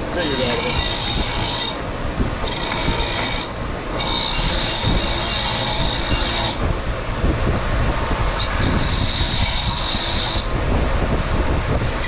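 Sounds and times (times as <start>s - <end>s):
low motor hum: 0.0s - 12.0s
grinder scraping metal blade: 0.1s - 1.8s, 2.4s - 6.8s, 8.4s - 10.5s.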